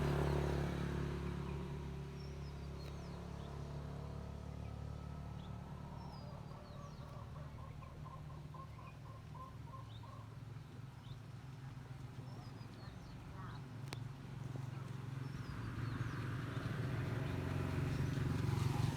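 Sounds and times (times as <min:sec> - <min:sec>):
low engine rumble: 0:10.8 - 0:18.9.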